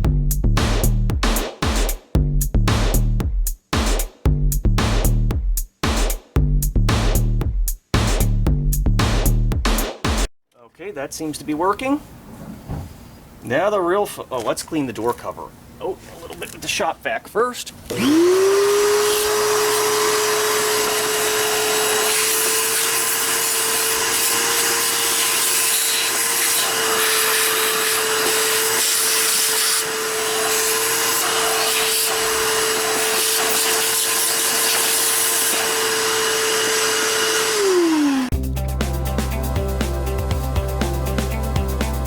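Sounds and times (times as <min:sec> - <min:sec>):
shop vac running: 0:17.8 - 0:38.3.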